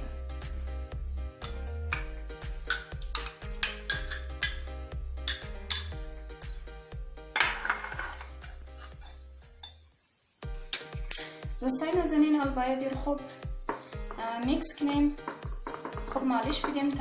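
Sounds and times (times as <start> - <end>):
background music with beat and bass: 0.0 - 8.8.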